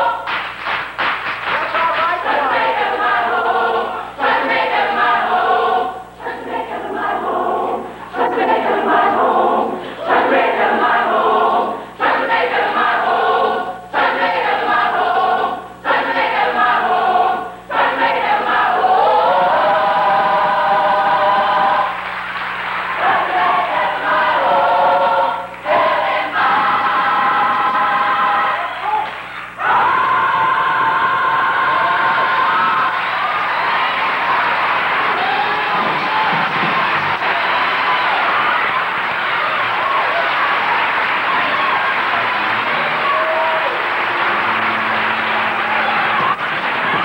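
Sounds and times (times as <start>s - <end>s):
choir singing: 0.0s - 0.3s, 2.1s - 22.0s, 22.9s - 28.8s, 29.6s - 47.0s.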